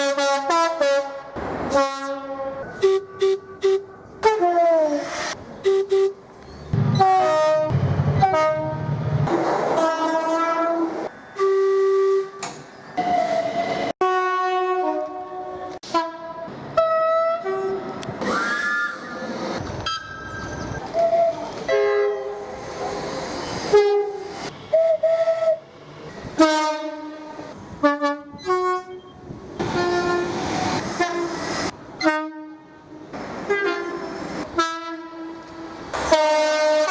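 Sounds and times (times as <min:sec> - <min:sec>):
two-tone train horn blasts: 0:00.0 - 0:04.9, 0:07.0 - 0:09.0, 0:09.8 - 0:12.4, 0:14.0 - 0:17.9, 0:21.0 - 0:22.4, 0:23.7 - 0:25.6, 0:26.4 - 0:31.4, 0:32.0 - 0:32.9, 0:33.5 - 0:35.4, 0:36.1 - 0:36.9
passing train rumble: 0:00.6 - 0:36.9.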